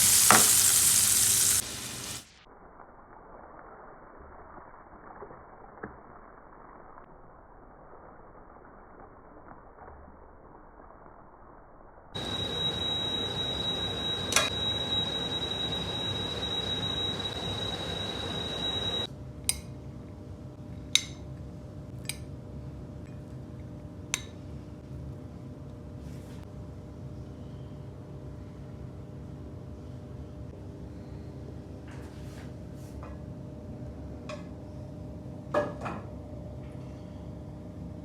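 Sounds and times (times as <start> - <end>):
steady cooking hiss: 0.0 - 7.0, 12.2 - 19.1
high whine: 12.2 - 19.1.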